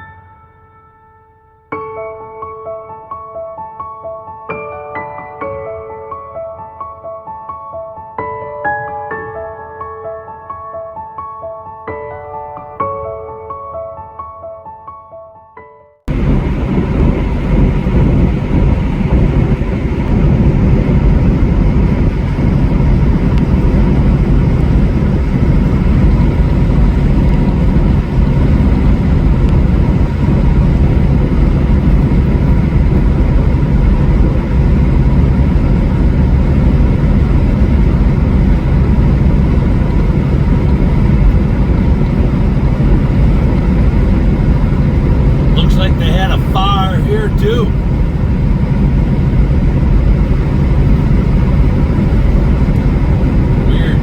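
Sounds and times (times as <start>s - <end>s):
music: 0.0s - 16.1s
road and wind noise: 16.1s - 54.0s
vehicle engine hum: 16.1s - 54.0s.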